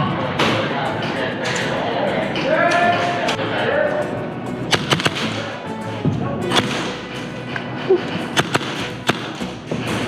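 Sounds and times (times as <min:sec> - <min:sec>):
steady background din: 0:00.0 - 0:10.0
airsoft gunfire cracks: 0:04.7 - 0:05.5, 0:06.5 - 0:07.0, 0:08.4 - 0:09.5.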